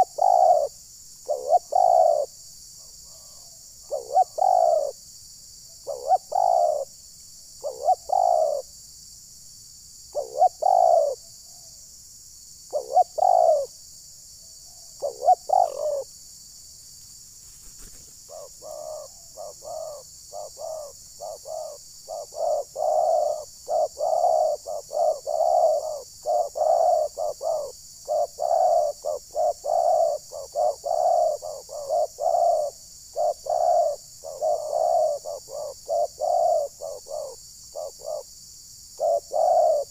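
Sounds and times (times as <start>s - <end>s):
doves cooing: 0.0s - 5.0s, 5.8s - 6.9s, 7.6s - 8.7s, 10.1s - 11.2s, 12.7s - 13.7s, 14.7s - 16.1s, 17.7s - 38.3s, 39.0s - 39.9s
steady high hiss: 15.0s - 39.9s.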